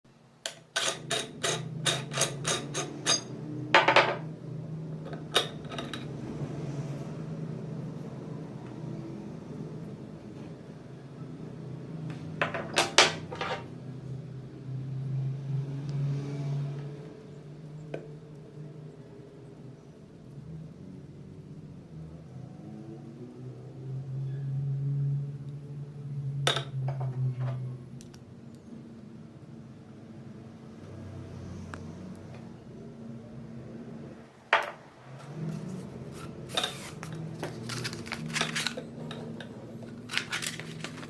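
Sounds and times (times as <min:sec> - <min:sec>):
metal scrape: 0:00.5 - 0:03.4, 0:35.1 - 0:41.0.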